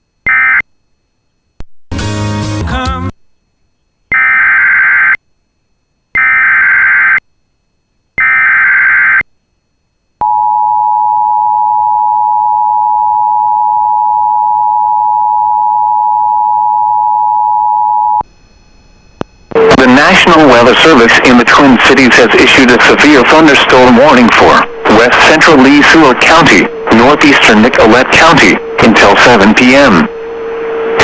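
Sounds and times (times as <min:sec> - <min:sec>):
data tone bursts: 0:19.6 - 0:31.0.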